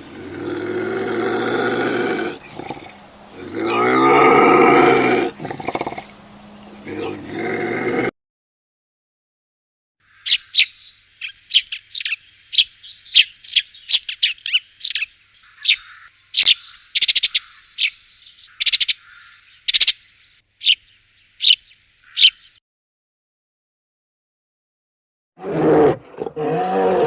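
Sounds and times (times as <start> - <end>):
small bird chirping: 10.0 - 22.6.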